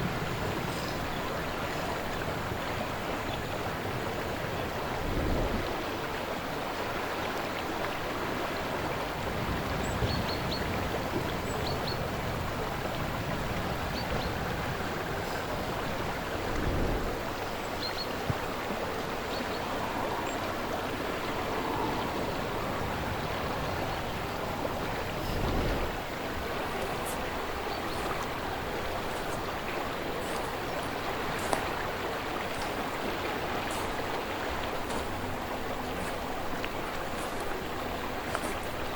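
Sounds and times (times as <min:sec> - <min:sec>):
river flowing: 0:00.0 - 0:38.9
wind gusts on microphone: 0:00.0 - 0:38.9.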